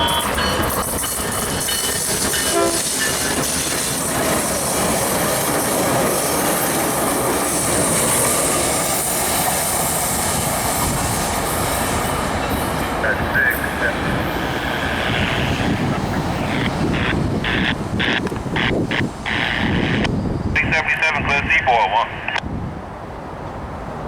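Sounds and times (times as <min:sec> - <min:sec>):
train passing close by: 0:00.0 - 0:24.0
train horn note: 0:02.4 - 0:03.0.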